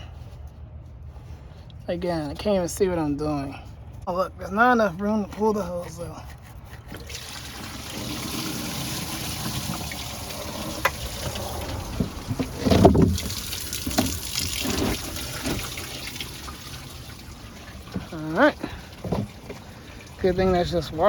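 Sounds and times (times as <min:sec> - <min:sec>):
liquid draining into container: 0:07.0 - 0:20.8.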